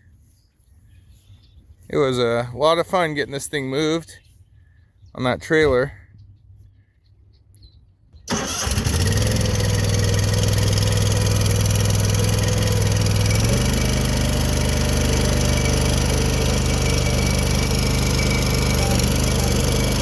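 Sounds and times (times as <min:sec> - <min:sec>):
mini bulldozer engine running: 0:08.3 - 0:20.0.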